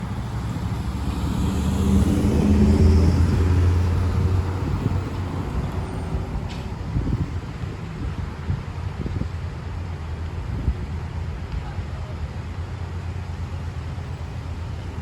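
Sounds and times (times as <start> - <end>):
vehicle engine drone passing: 0.0 - 8.2.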